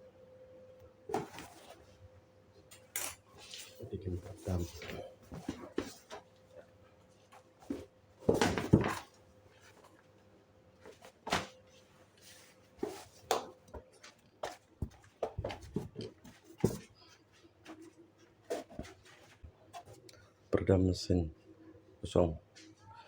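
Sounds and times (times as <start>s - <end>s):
objects being handled: 1.1s - 2.0s, 2.6s - 10.2s, 10.8s - 20.1s.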